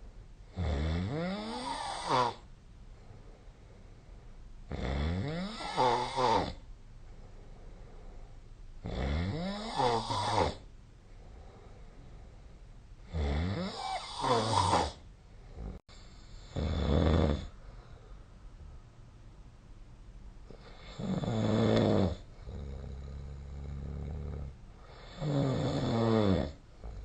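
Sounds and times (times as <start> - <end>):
person snoring: 0.5 - 2.5, 4.7 - 6.6, 8.8 - 10.7, 13.0 - 17.6, 20.5 - 27.0
quiet breathing: 1.5 - 4.7, 5.4 - 8.8, 9.7 - 13.1, 13.7 - 16.8, 17.4 - 19.2, 20.4 - 25.6, 26.4 - 27.0.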